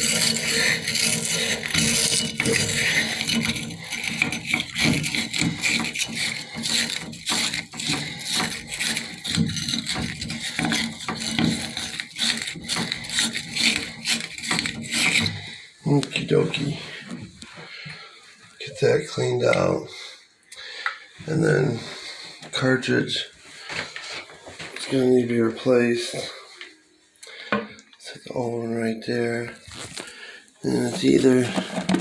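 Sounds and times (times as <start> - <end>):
wire brush scraping metal: 0.0 - 15.5, 30.7 - 32.0.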